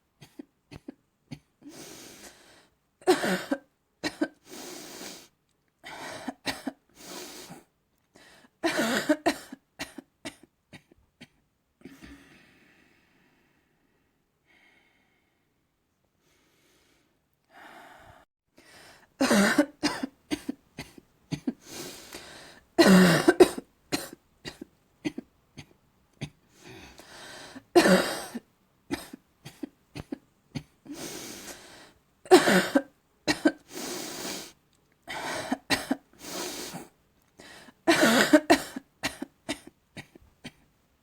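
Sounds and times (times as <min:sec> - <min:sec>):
person coughing: 0:03.1 - 0:04.4, 0:08.6 - 0:11.0, 0:19.2 - 0:21.6, 0:22.8 - 0:26.4, 0:27.8 - 0:30.7, 0:32.3 - 0:33.7, 0:35.4 - 0:36.0, 0:37.9 - 0:40.6.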